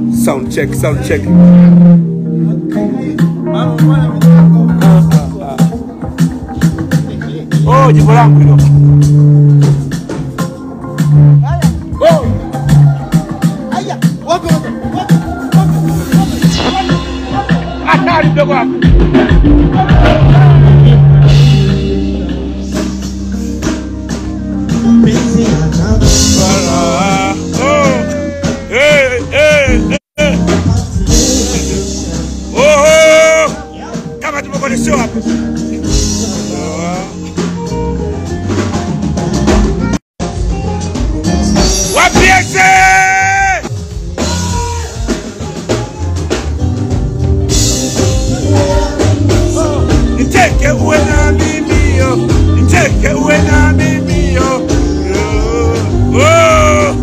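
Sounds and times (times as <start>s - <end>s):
bass guitar: 0.0s - 57.0s
drum kit: 0.0s - 57.0s
person singing wavering notes: 24.8s - 30.5s, 47.9s - 57.0s.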